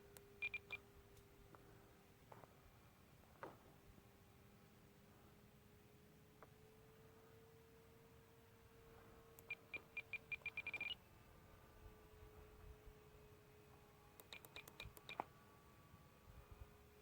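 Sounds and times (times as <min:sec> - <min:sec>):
faint steady hum: 0:00.0 - 0:17.0
radio transmitter beeping: 0:00.4 - 0:00.8, 0:09.4 - 0:11.0.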